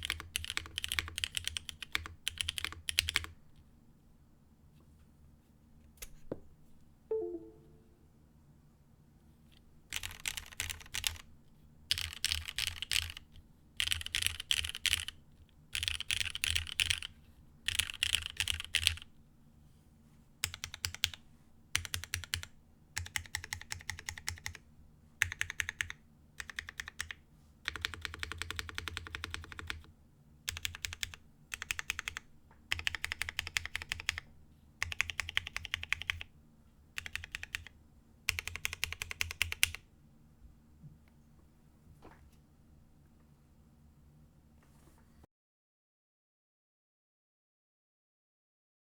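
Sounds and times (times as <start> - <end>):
mechanical keyboard typing: 0.0 - 3.4, 9.9 - 11.2, 11.9 - 15.2, 15.8 - 17.1, 17.7 - 19.1, 20.4 - 21.2, 21.8 - 24.6, 25.2 - 29.9, 30.5 - 34.2, 34.8 - 36.3, 37.0 - 37.7, 38.3 - 39.8.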